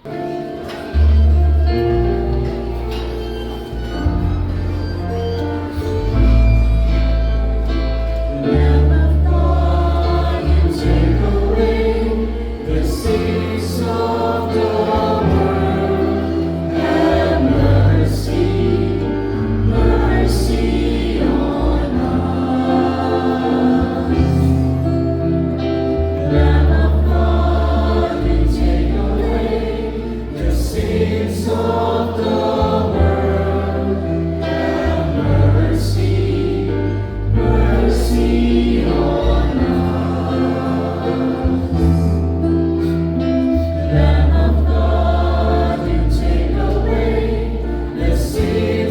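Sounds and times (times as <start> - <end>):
choir singing a hymn: 0.0 - 48.9
deep sustained bass notes: 1.0 - 48.9.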